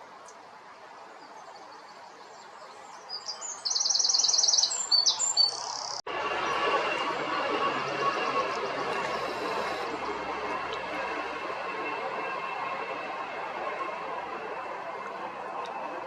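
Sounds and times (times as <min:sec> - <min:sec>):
small bird singing: 0:01.2 - 0:06.0
steady rushing noise: 0:06.1 - 0:16.0.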